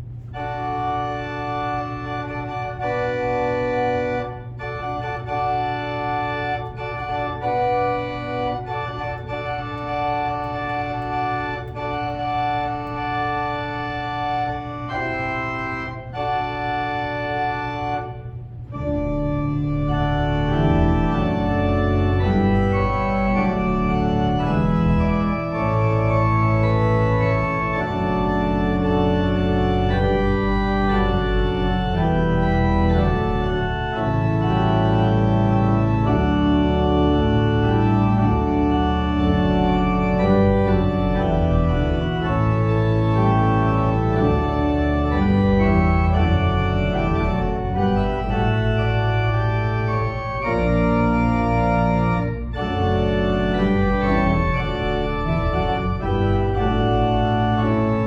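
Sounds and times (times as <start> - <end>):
organ playing chords: 0.0 - 58.0.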